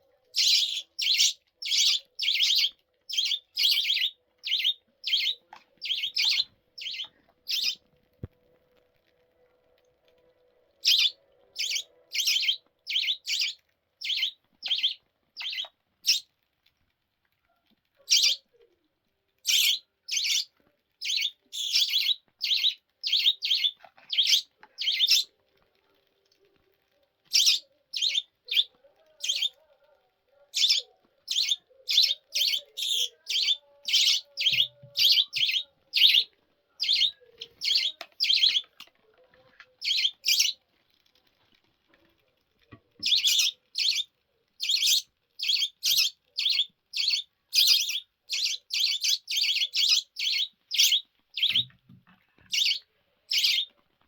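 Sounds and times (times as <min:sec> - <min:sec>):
budgerigar chirping: 0:00.4 - 0:07.8, 0:10.8 - 0:16.2, 0:18.1 - 0:18.4, 0:19.5 - 0:25.3, 0:27.3 - 0:29.5, 0:30.6 - 0:38.7, 0:39.8 - 0:40.6, 0:43.0 - 0:51.7, 0:52.5 - 0:53.7.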